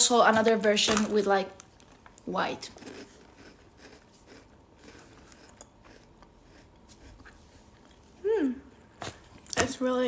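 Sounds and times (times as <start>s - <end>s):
chewing crunchy biscuit: 0.9s - 8.1s.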